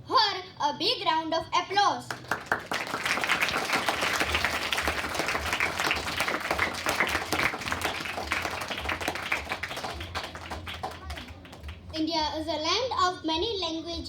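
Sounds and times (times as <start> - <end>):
audience applauding: 2.1 - 12.0.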